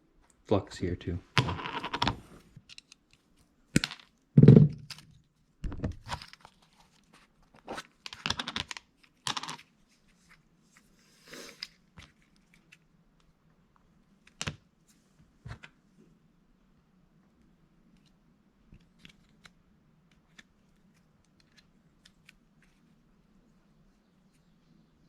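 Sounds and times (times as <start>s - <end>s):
knocks and clicks on bench: 4.4s - 4.9s.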